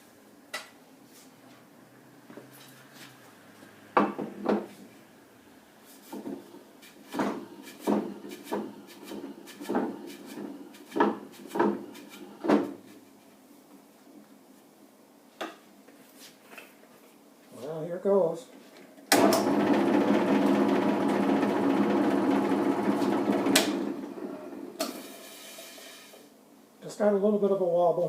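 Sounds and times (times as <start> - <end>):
wooden knocks and clunks: 9.6 - 12.8.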